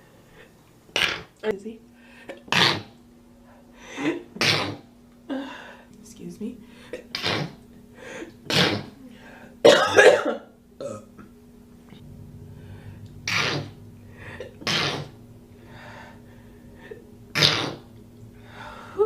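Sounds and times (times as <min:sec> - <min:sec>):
woman sneezing: 0:08.5 - 0:09.0.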